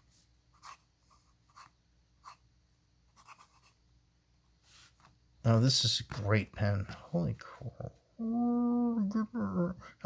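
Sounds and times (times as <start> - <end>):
fountain pen scratching paper: 3.2 - 3.8.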